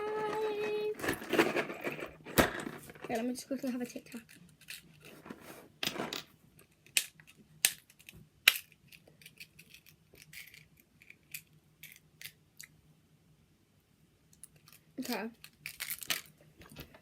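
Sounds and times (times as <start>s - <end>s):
mints rattling in plastic box: 0.0s - 6.2s.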